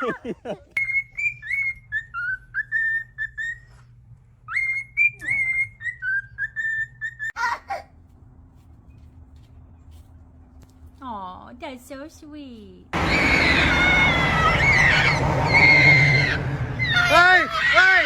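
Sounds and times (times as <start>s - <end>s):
bird whistling a tune: 0.8s - 3.7s, 4.5s - 7.3s.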